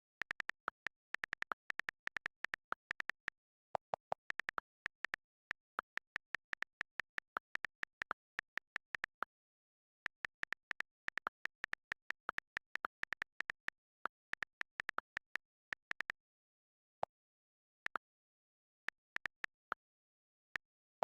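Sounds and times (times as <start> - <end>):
phone virtual keyboard clicks: 0.0 - 9.3, 10.0 - 16.2.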